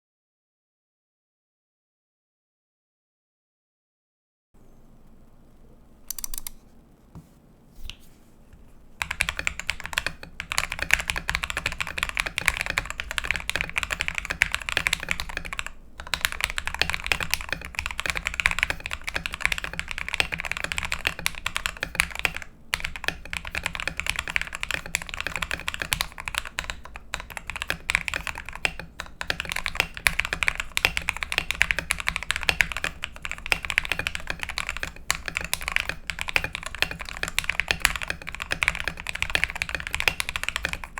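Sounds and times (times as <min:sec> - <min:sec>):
typing on a mechanical keyboard: 0:06.1 - 0:06.6, 0:09.0 - 0:40.9.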